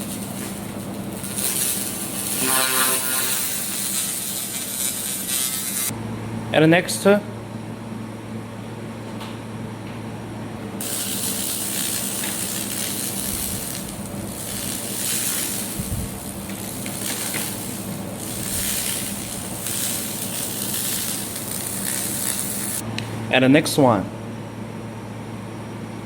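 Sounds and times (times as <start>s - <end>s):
laser crackling hiss on metal: 0.0s - 5.9s, 10.8s - 22.8s
machine low hum: 0.0s - 26.0s.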